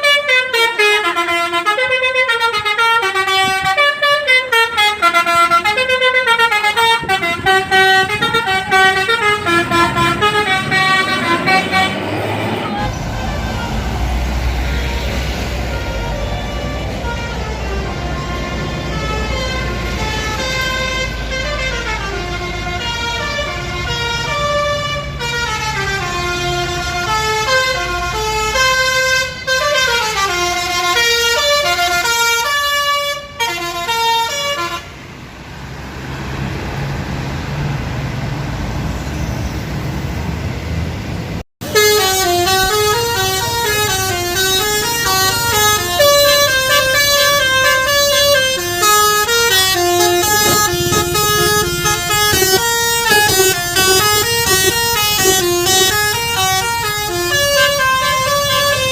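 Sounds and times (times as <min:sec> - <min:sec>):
multi-tone musical bus horn: 0:00.0 - 0:35.2, 0:41.6 - 0:58.9
road noise: 0:00.0 - 0:58.9
low engine rumble: 0:06.7 - 0:25.0, 0:42.0 - 0:58.8.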